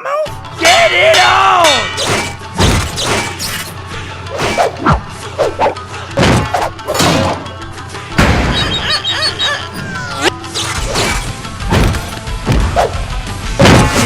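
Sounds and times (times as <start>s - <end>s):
background music: 0.0s - 14.0s
cartoon hits and crashes: 8.2s - 8.8s, 13.6s - 14.0s.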